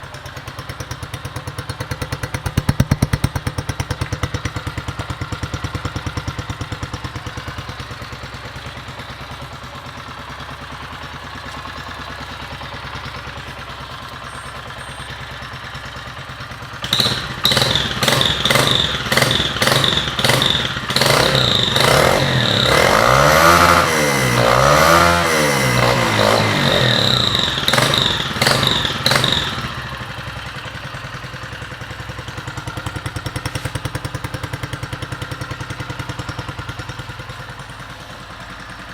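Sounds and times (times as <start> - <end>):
motorcycle engine idling and revving: 0.0 - 38.9.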